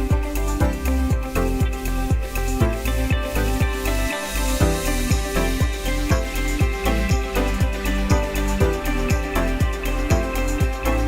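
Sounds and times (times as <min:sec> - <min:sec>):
electronic beat music: 0:00.0 - 0:11.0.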